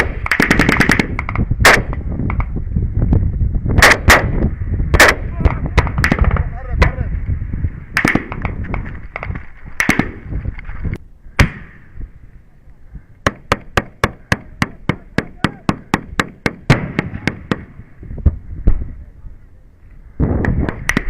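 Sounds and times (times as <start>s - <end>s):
gunshots: 0.0s - 2.0s, 3.8s - 4.4s, 5.0s - 6.4s, 8.0s - 8.6s, 9.8s - 10.3s, 13.2s - 17.8s.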